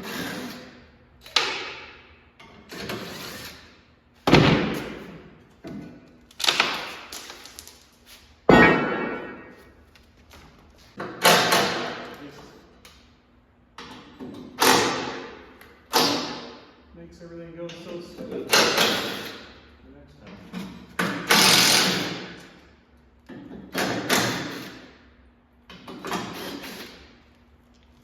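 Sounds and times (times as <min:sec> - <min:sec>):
metal impacts ringing: 0:08.5 - 0:09.7.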